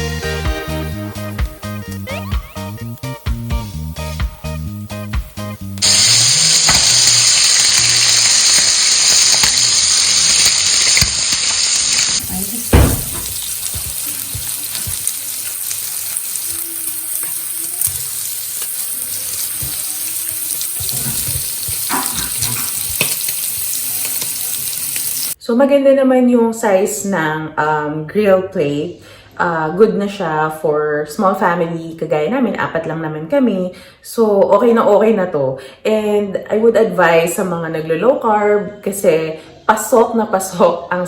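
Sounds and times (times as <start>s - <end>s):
music: 0.0s - 10.2s, 12.5s - 25.2s
meat sizzling on a grill plate: 1.2s - 25.4s
knock: 12.7s - 13.4s.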